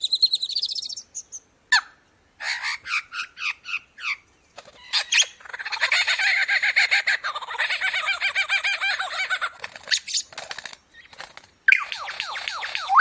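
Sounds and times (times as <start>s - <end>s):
lyrebird singing mimicked calls: 0.0s - 9.2s, 9.8s - 13.0s.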